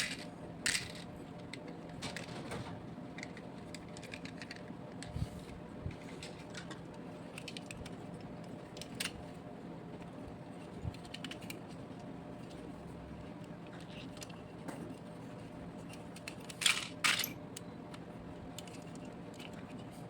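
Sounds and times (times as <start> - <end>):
toy vehicles clicking and tapping: 0.0 - 1.6
faint steady hum: 0.0 - 20.0.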